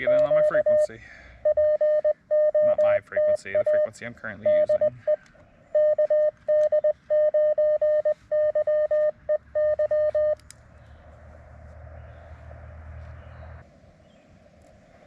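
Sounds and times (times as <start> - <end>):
morse code tone: 0.0 - 10.4.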